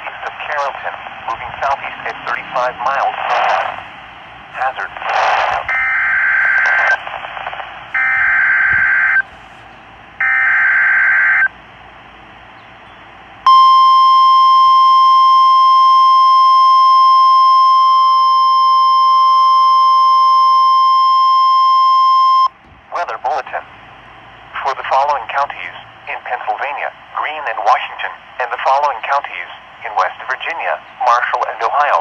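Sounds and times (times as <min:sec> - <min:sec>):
steady alarm tone: 0:01.9 - 0:09.4, 0:10.2 - 0:11.6, 0:13.4 - 0:22.6.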